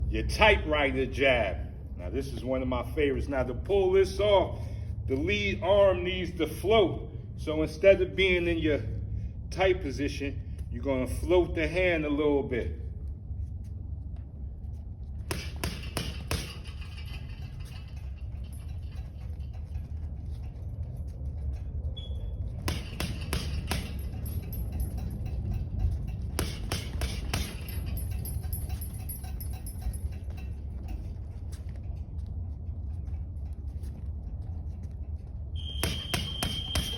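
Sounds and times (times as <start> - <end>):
steady low rumble: 0.0 - 36.9.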